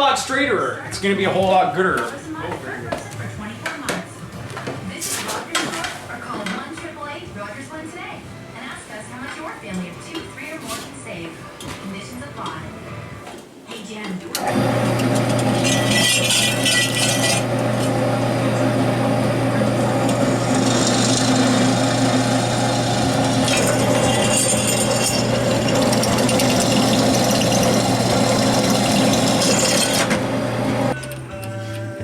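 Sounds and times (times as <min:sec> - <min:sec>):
power tool cutting steel: 0:14.4 - 0:31.0.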